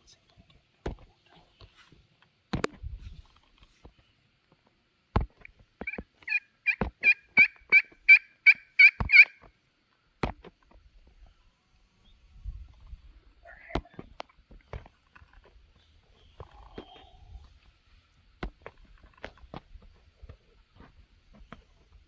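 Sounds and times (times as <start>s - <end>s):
turkey call hen yelps: 5.8s - 9.4s.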